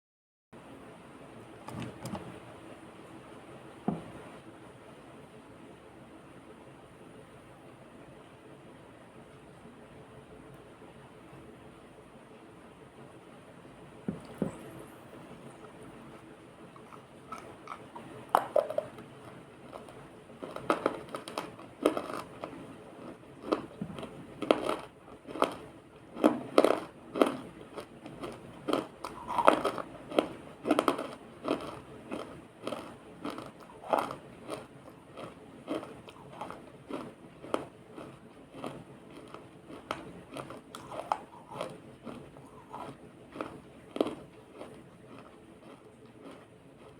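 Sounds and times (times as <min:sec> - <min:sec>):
crumbling and chewing: 0:14.1 - 0:46.9
crunching bites: 0:16.8 - 0:46.9.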